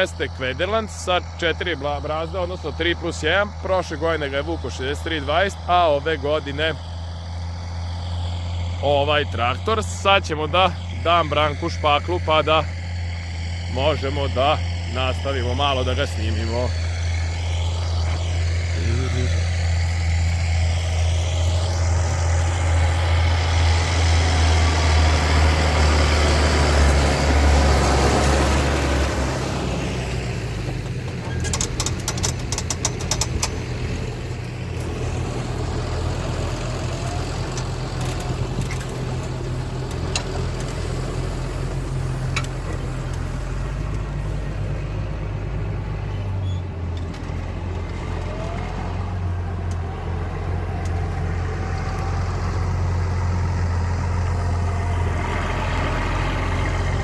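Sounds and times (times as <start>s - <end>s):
tractor diesel engine running: 0.0s - 57.0s
sharp clicks: 30.6s - 35.0s.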